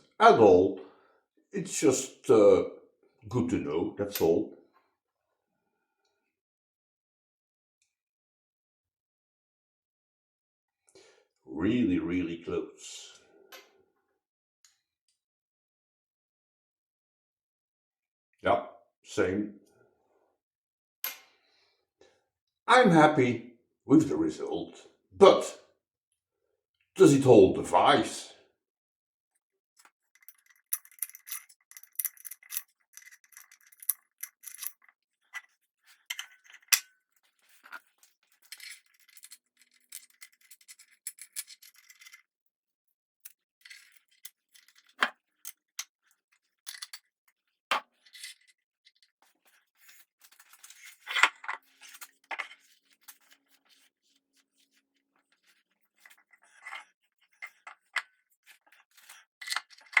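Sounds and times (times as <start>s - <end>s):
metallic clicks and scrapes: 29.8s - 42.3s, 43.2s - 53.9s, 55.4s - 60.0s.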